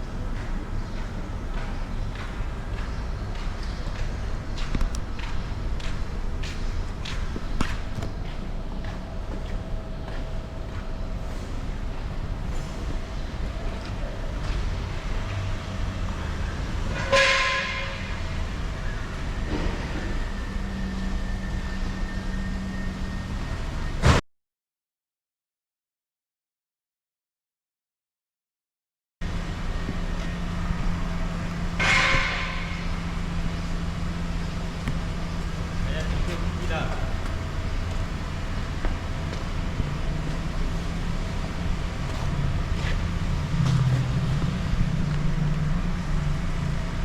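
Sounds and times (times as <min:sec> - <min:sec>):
steady low rumble: 0:00.0 - 0:16.9, 0:29.2 - 0:47.0
low machine hum: 0:00.0 - 0:17.0, 0:29.2 - 0:47.0
loud ringing horn-like tone: 0:16.9 - 0:18.4, 0:31.7 - 0:33.4.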